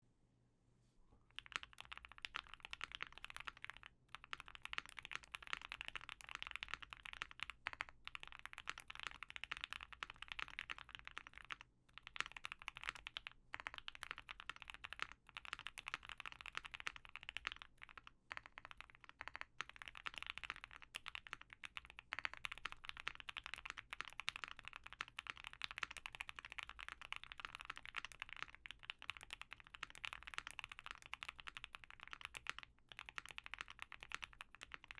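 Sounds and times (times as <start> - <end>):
mechanical keyboard typing: 1.3 - 34.9.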